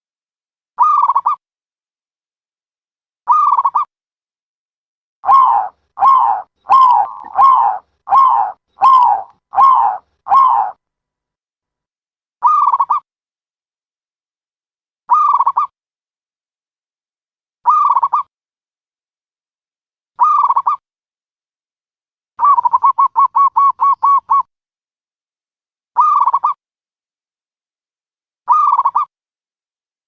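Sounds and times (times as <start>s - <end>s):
dove cooing: 5.2s - 10.8s.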